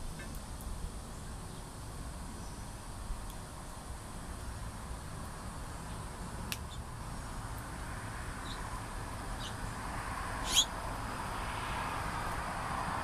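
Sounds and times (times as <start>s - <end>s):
high bird chirps: 9.4s - 9.6s, 10.4s - 10.7s.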